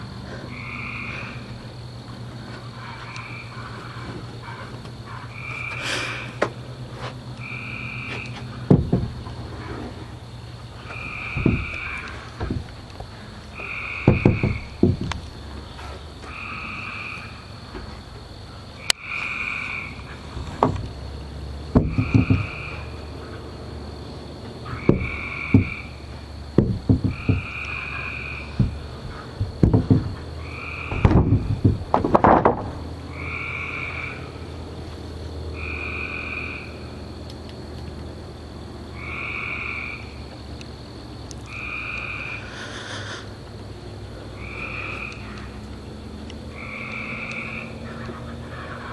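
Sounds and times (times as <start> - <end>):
high insect drone: 0.0 - 48.9
two-tone animal call: 7.4 - 8.8, 10.8 - 12.5, 13.5 - 14.9, 18.8 - 20.3, 24.6 - 26.1, 33.1 - 34.6, 44.4 - 45.6, 46.5 - 48.9
low knocks and grunts: 8.4 - 10.2, 10.8 - 15.7, 20.1 - 23.0, 24.8 - 25.9, 26.5 - 27.8, 28.5 - 32.9.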